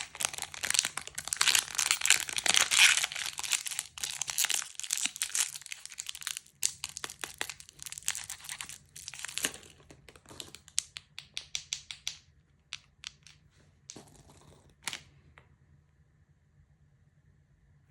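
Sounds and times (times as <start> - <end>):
candy wrapper crinkling and tearing: 0.0 - 11.0.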